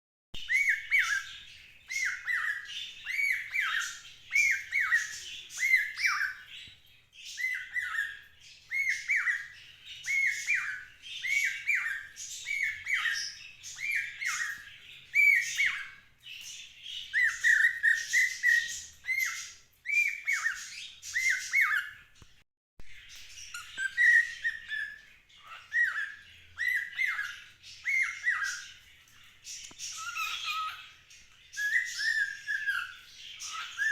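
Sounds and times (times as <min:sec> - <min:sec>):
cockatiel whistling: 0:23.5 - 0:28.6, 0:31.6 - 0:33.9.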